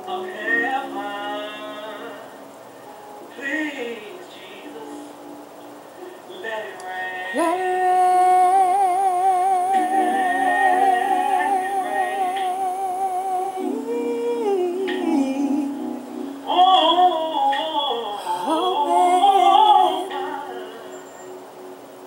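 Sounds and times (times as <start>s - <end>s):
gospel choir singing in harmony: 6.8s - 21.4s.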